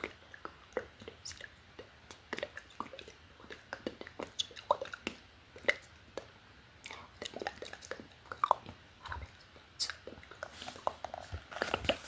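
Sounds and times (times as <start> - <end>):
wet mouth clicks and lip smacks: 0.0 - 9.2
soft whispering: 0.0 - 12.0.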